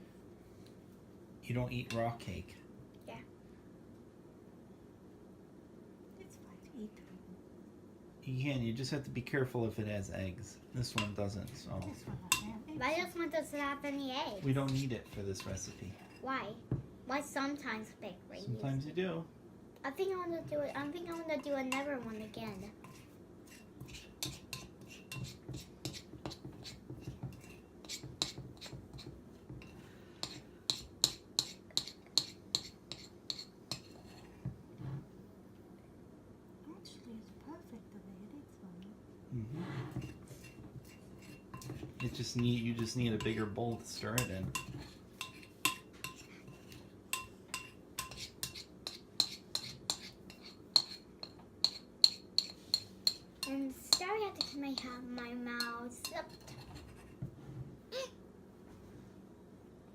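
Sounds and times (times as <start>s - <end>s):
spoon stirring batter in cup: 14.4s - 16.2s, 21.0s - 35.1s, 39.9s - 57.4s.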